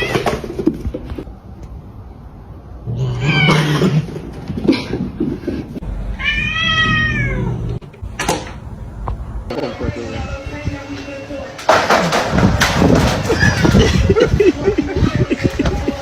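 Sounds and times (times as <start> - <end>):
cat meowing: 2.9 - 4.0, 6.2 - 7.8.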